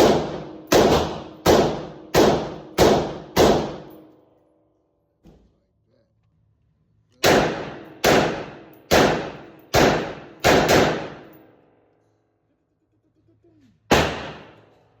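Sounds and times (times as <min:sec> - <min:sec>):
rifle shots echoing: 0:00.0 - 0:04.1, 0:07.2 - 0:11.5, 0:13.9 - 0:14.8.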